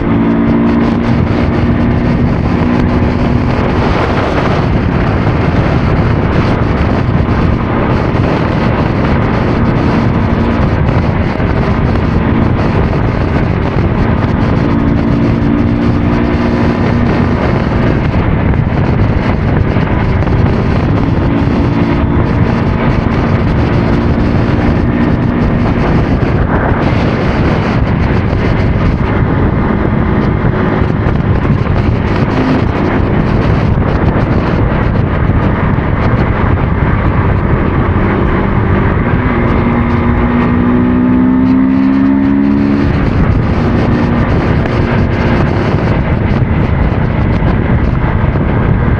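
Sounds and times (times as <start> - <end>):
motorcycle engine running: 0.0 - 48.9
wind and road noise: 0.0 - 48.9.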